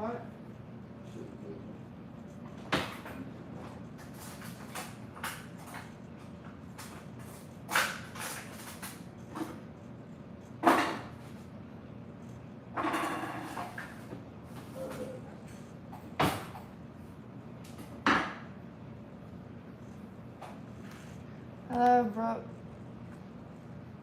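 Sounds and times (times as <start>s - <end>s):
knocks and clatters of kitchen items: 10.6s - 11.2s, 12.7s - 15.2s, 15.9s - 16.7s, 17.8s - 18.5s.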